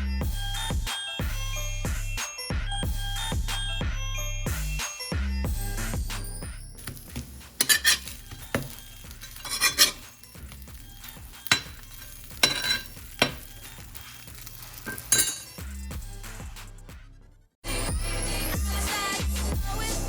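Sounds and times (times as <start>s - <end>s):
dishes and utensils clattering: 6.8s - 15.7s.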